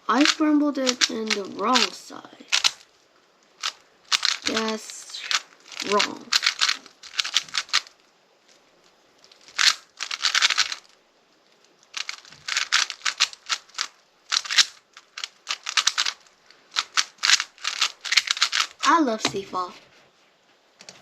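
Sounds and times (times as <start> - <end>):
puzzle cube plastic clicks: 0.1 - 2.9, 3.6 - 7.9, 9.3 - 11.0, 11.9 - 19.5.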